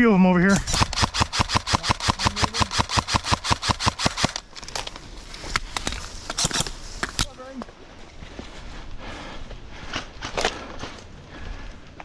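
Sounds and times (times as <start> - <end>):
airsoft gun rapid fire: 0.6 - 4.4
airsoft gun single cracks: 0.7 - 4.4.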